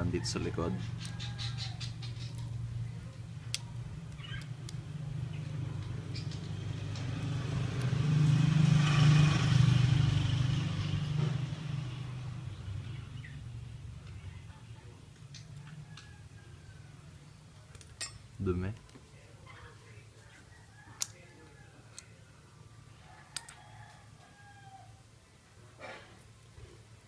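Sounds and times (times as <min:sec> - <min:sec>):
motor vehicle passing by: 0:00.0 - 0:17.6.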